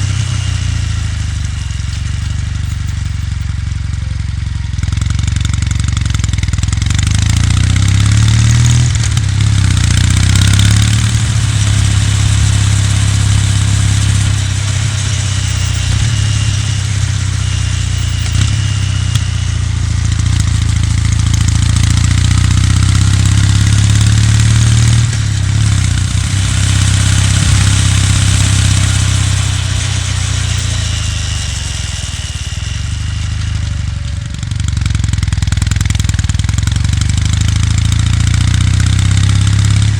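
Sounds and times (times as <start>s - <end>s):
motorcycle engine and exhaust: 0.0s - 39.9s
wind and road noise: 7.1s - 36.6s.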